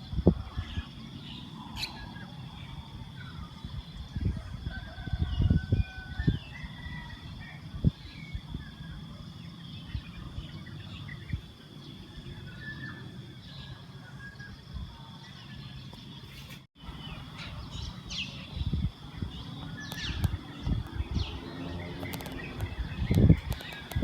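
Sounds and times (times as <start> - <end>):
birds chirping: 0.0 - 4.2, 15.2 - 24.0.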